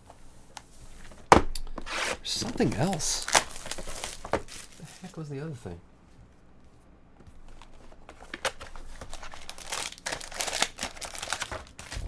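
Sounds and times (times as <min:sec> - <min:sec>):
plastic packaging crinkling: 0:02.3 - 0:05.2, 0:07.4 - 0:12.0.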